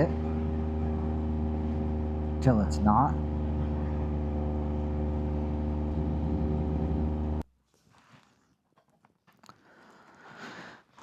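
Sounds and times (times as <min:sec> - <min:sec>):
motorcycle engine running: 0:00.0 - 0:07.4.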